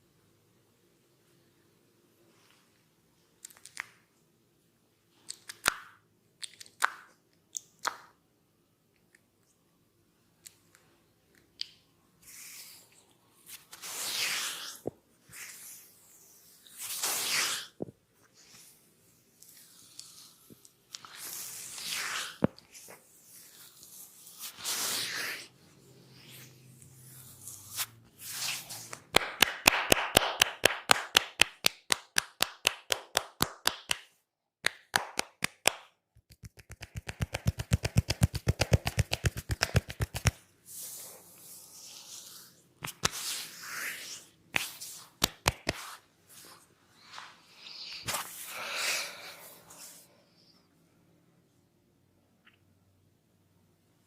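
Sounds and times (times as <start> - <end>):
hands rubbing skin: 27.1 - 48.5
rapid hand slaps: 28.9 - 40.4, 44.6 - 45.9.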